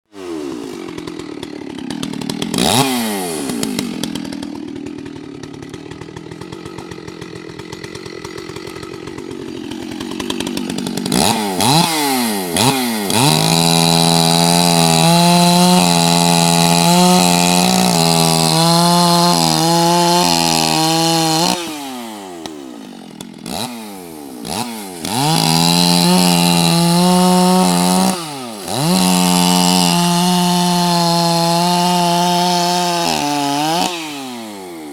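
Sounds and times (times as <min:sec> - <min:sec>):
chainsaw engine revving: 0:00.0 - 0:34.9.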